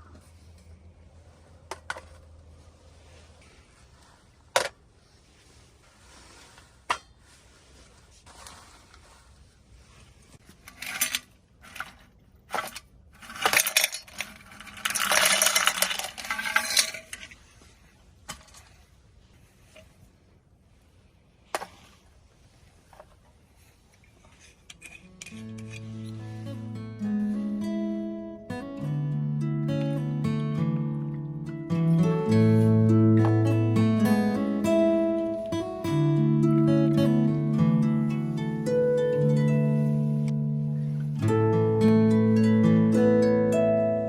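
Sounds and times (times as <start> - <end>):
metal cookware clattering: 12.6 - 17.4.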